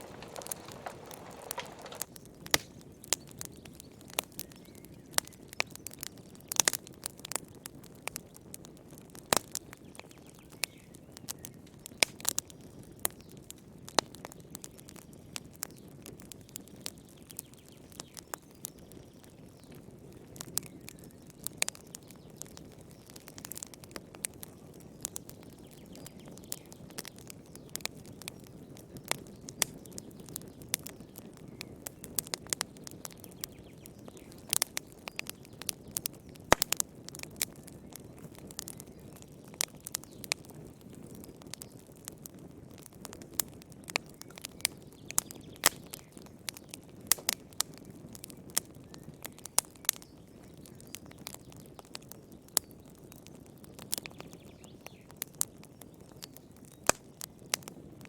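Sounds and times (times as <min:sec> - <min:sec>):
low rush of flames: 0:00.0 - 0:02.8
wood fire crackling: 0:00.0 - 0:58.0.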